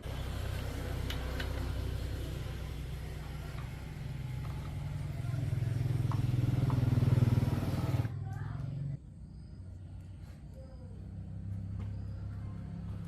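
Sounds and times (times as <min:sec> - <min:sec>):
motor running: 0:00.0 - 0:08.1.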